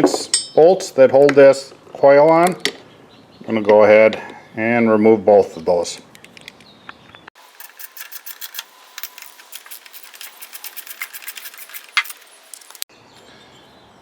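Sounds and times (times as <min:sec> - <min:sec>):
ratchet wrench clicking: 0:07.6 - 0:12.6.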